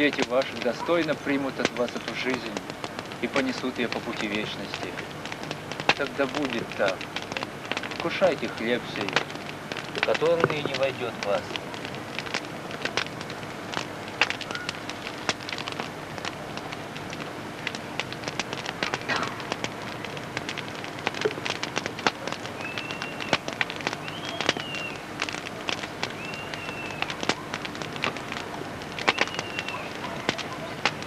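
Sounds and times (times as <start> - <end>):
campfire crackling and popping: 0.0 - 31.0
steady hiss: 0.0 - 31.0
bird chirps: 22.6 - 23.3, 24.0 - 25.0, 26.2 - 27.0, 29.1 - 29.9.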